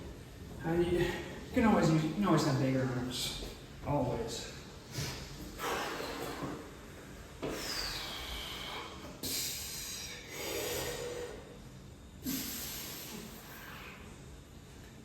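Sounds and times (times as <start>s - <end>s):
person exhaling forcefully: 4.9s - 6.6s, 7.4s - 11.5s, 12.2s - 14.0s.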